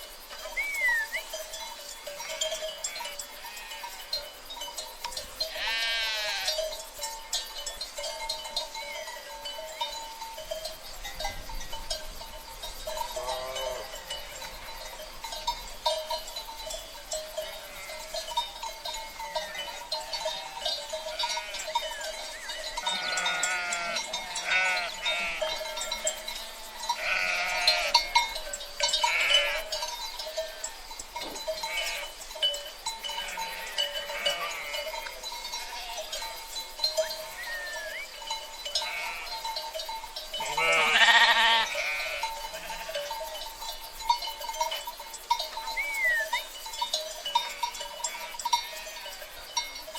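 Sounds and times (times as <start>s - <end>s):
sheep bleating: 5.5s - 6.6s, 17.6s - 18.1s, 19.4s - 21.9s, 22.8s - 25.7s, 27.0s - 28.1s, 29.0s - 29.7s, 31.6s - 32.1s, 33.2s - 34.9s, 37.2s - 38.0s, 38.8s - 39.4s, 40.4s - 43.0s.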